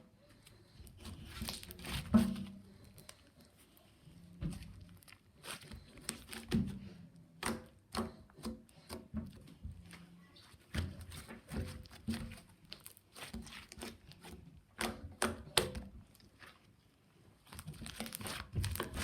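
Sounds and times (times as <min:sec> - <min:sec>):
slime squished by hand: 0:10.6 - 0:16.7, 0:17.4 - 0:19.0.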